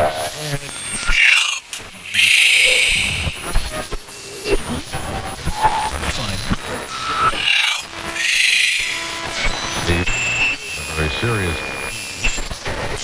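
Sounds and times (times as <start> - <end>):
hissing swells: 0.0 - 4.5.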